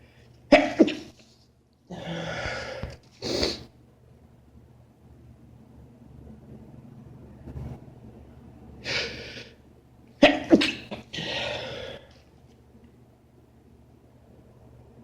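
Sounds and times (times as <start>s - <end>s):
man sneezing: 10.2s - 11.8s.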